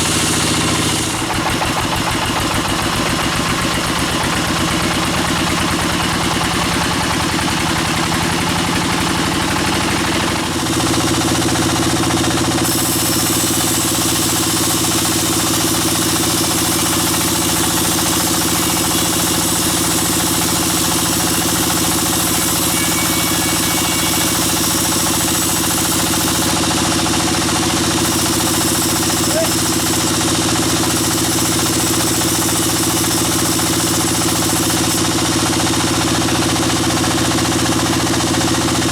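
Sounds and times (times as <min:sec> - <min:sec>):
band saw machinery droning: 0:04.3 - 0:38.9.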